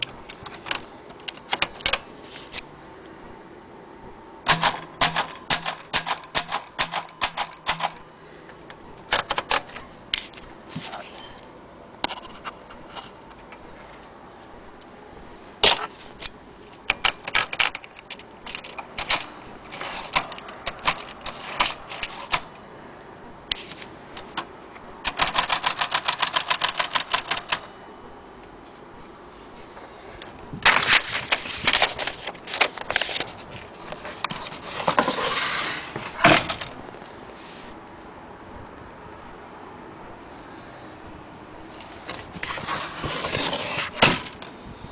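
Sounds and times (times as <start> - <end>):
typewriter key strikes: 4.5 - 8.0, 25.0 - 27.6.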